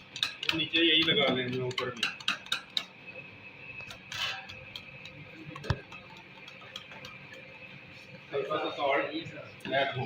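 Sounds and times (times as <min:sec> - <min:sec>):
utensils clicking against dish: 0:00.0 - 0:03.0, 0:03.8 - 0:07.7.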